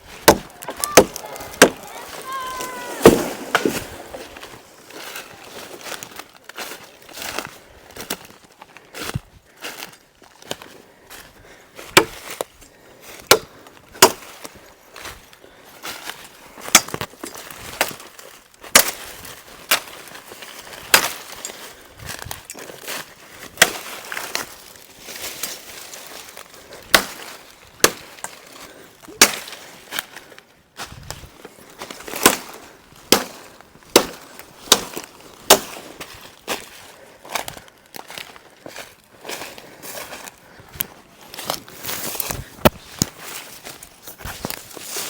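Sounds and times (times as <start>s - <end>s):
machete chopping green wood: 0.2s - 4.2s, 12.0s - 12.4s, 13.3s - 14.3s, 16.7s - 17.1s, 18.7s - 19.0s, 20.9s - 21.2s, 23.6s - 23.9s, 26.9s - 28.1s, 29.1s - 29.6s, 32.1s - 35.8s.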